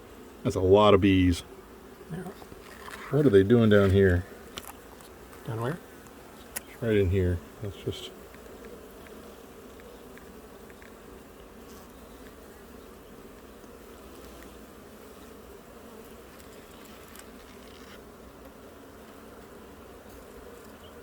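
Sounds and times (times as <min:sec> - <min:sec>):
honeybees buzzing: 0:00.0 - 0:21.0.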